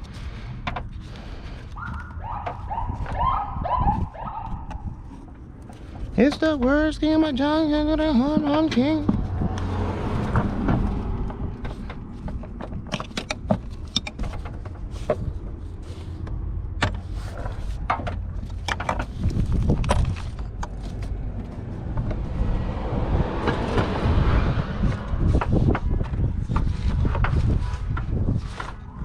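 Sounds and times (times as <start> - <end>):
low rumble: 1.2 - 29.0
hand tools clicking on plastic: 11.2 - 15.2.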